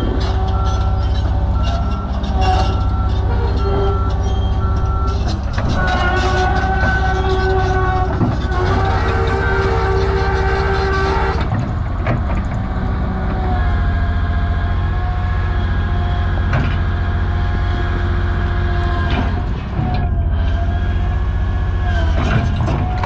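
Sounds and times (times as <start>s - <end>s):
whining hydraulic pumps: 0.0s - 11.6s
excavator diesel drone: 0.0s - 23.0s.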